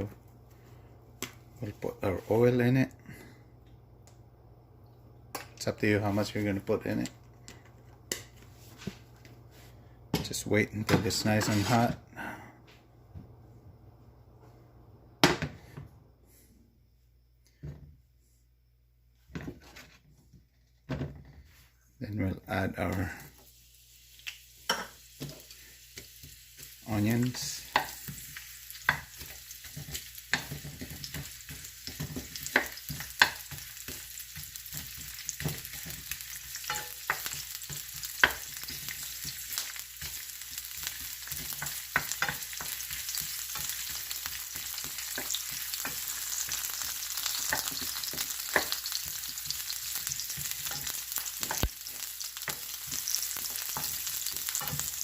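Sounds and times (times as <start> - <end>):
utensil scraping pan: 11.1 - 11.9
onions sizzling in oil: 22.8 - 55.0.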